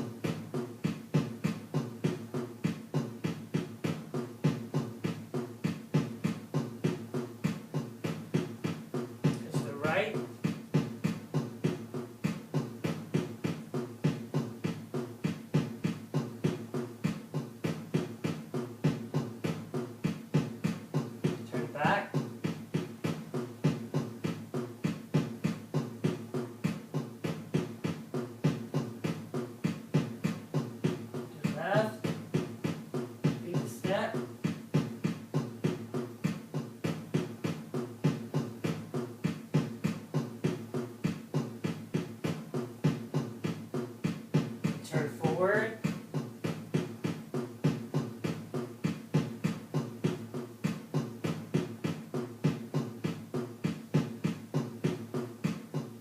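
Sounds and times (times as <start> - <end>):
dance music with fast drumbeat: 0.0 - 56.0.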